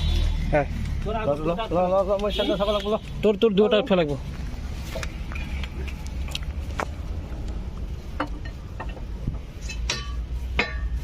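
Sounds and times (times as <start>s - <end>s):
metallic clinks and knocks: 8.2s - 11.0s.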